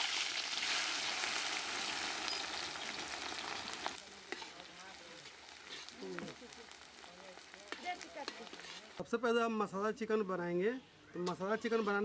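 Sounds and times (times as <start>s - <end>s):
onions sizzling in hot oil: 0.0s - 9.0s.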